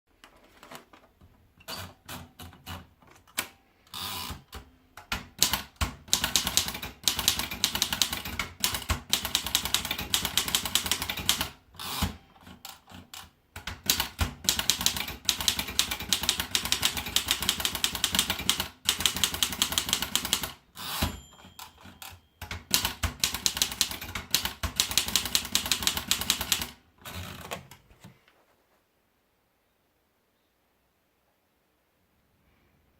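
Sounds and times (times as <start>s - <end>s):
manual typewriter typing: 1.6s - 27.8s.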